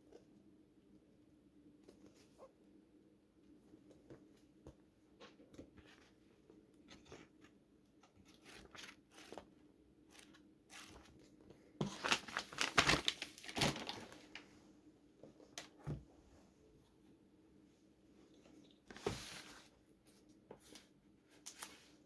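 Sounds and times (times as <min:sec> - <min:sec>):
packaging crinkling and tearing: 0:11.9 - 0:14.4.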